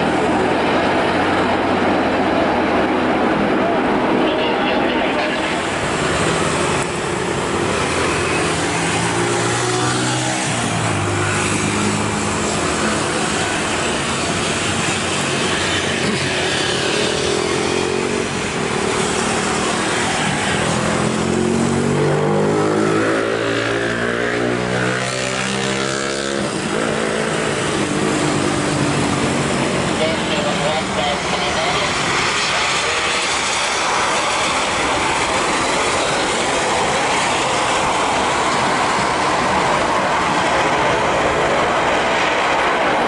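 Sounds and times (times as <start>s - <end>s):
motorcycle engines passing: 0.0s - 43.0s
traffic noise: 0.0s - 43.0s.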